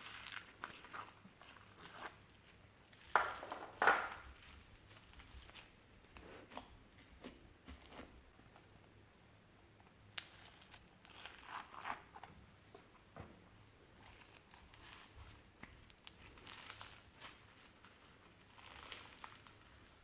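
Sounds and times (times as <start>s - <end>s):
slime squished by hand: 0.0s - 5.9s.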